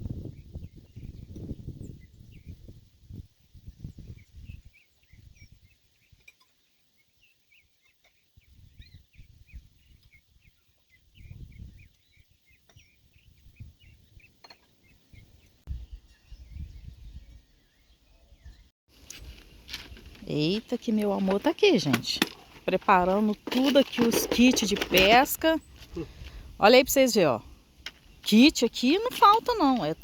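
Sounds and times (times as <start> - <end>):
wind rumbling on microphone: 0.0 - 6.2, 8.4 - 20.3
birds chirping: 3.8 - 18.7, 19.6 - 30.0.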